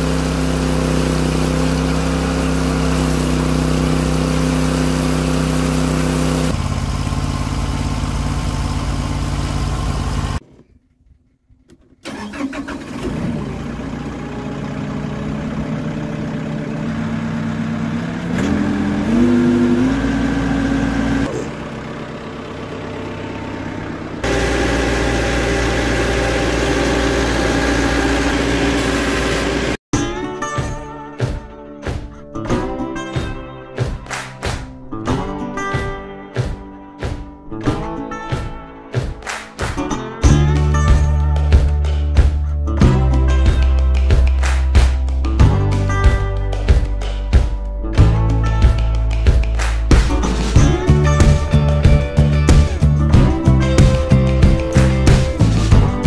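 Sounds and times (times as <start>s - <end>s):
band sawmill engine running: 0.0s - 10.4s, 11.6s - 29.8s, 49.6s - 56.0s.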